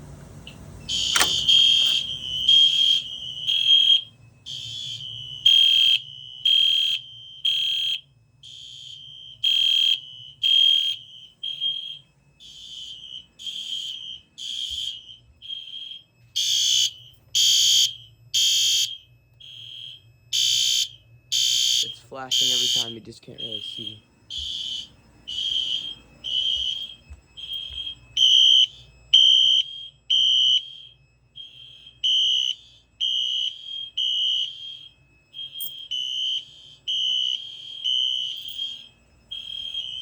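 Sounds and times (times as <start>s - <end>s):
fire alarm horn pulses: 0.0s - 40.0s
sharp click: 0.5s - 2.1s.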